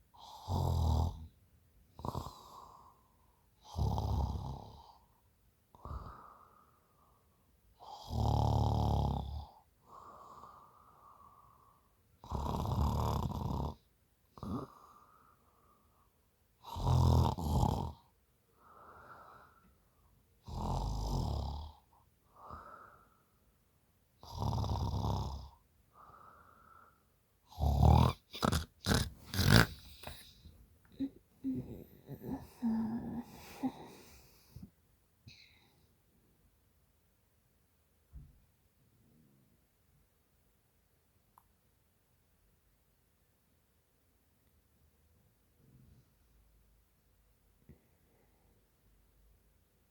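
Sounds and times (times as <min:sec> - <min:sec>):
woman snoring: 0:00.2 - 0:01.2, 0:02.0 - 0:03.0, 0:03.6 - 0:05.0, 0:07.8 - 0:09.5, 0:12.2 - 0:13.8, 0:14.4 - 0:14.9, 0:16.6 - 0:18.0, 0:20.5 - 0:21.8, 0:24.2 - 0:25.5, 0:27.5 - 0:34.7.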